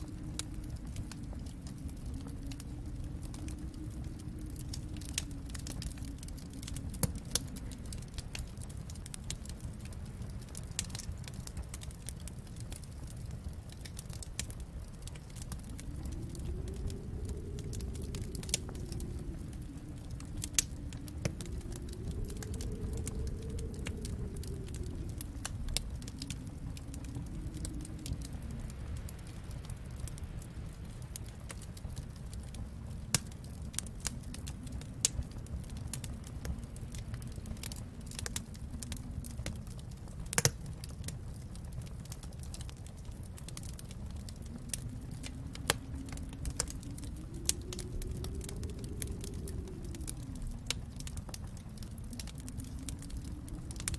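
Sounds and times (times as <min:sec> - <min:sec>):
fireplace fire crackling: 0:00.0 - 0:53.9
low rumble: 0:00.0 - 0:53.9
sharp pops from fire: 0:37.2 - 0:53.9.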